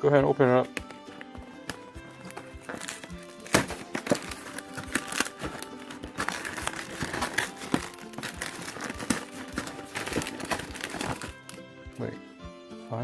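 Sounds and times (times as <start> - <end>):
background music: 0.0 - 13.0
wrapper crinkling and rustling: 2.2 - 11.6.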